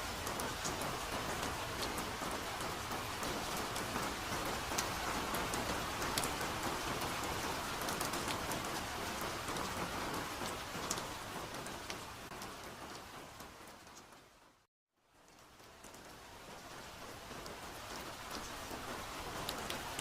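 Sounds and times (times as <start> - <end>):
raindrops ticking close by: 0.0 - 20.0
soft rain hissing: 15.1 - 20.0.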